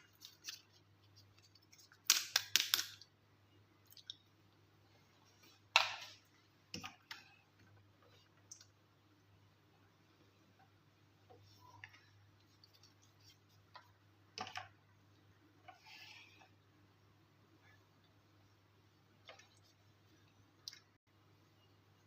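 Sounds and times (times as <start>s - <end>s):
plastic toys and packaging clicking: 1.4s - 3.1s
faint steady hum: 2.9s - 22.0s.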